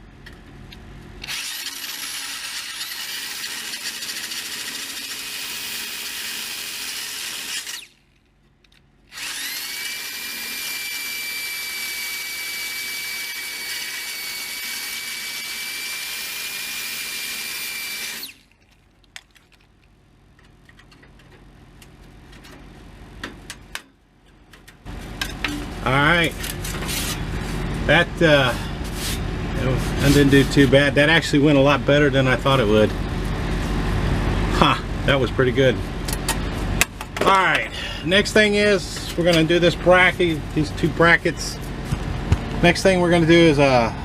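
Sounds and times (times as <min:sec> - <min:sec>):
drill cutoff wheel grinding pipe: 0:01.2 - 0:08.0, 0:09.1 - 0:18.5.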